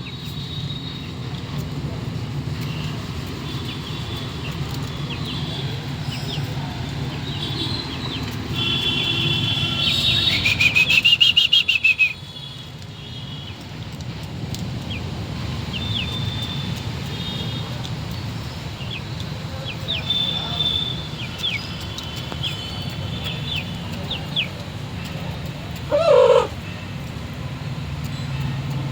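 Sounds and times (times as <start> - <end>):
small birds chirping: 3.5 - 8.7, 14.5 - 26.9
rooster crowing: 25.9 - 26.6.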